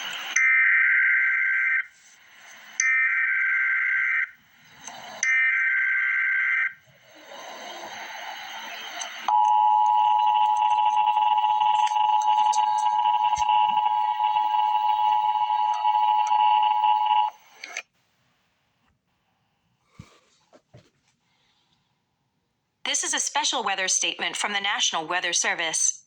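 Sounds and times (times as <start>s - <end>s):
warbling digital data tones: 7.6s - 17.4s.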